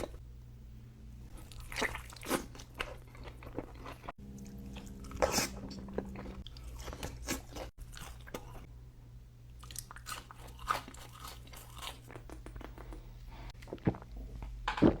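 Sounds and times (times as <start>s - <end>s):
chewing and biting food: 1.4s - 8.7s, 9.6s - 13.0s.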